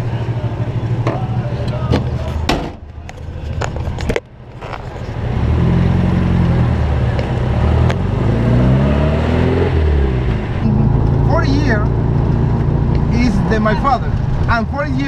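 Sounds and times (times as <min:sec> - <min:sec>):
car engine accelerating: 0:03.2 - 0:15.0.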